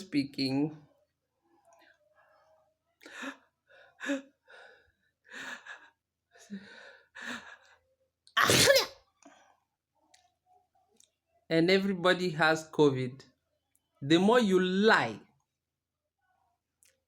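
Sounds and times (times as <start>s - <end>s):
person sneezing loudly: 8.4s - 9.0s.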